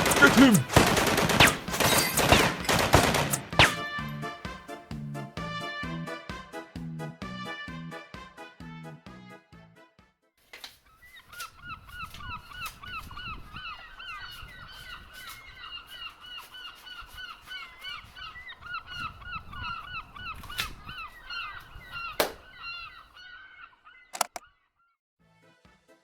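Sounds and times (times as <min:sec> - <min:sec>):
sharp cracks: 0:00.0 - 0:03.9, 0:24.2 - 0:24.4.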